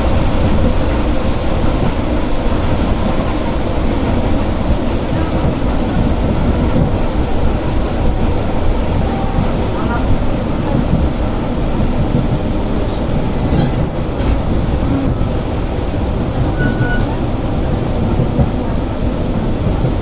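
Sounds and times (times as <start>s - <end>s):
train wheels rumbling: 0.0s - 20.0s
faint high squeals: 13.6s - 17.2s.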